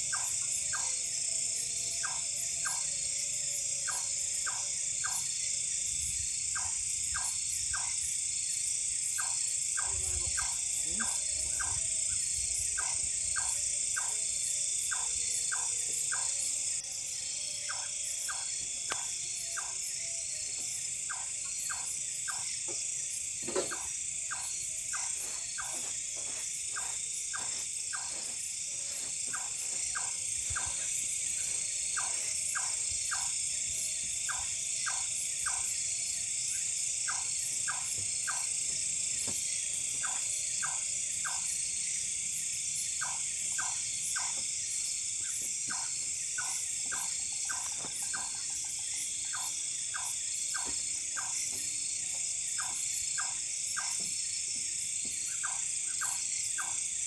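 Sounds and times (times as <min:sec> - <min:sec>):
night animal calls: 0:00.0 - 0:05.7, 0:06.4 - 0:08.3, 0:09.1 - 0:41.8, 0:42.8 - 0:54.2, 0:55.1 - 0:57.0
high-pitched drone and hiss: 0:00.0 - 0:41.8.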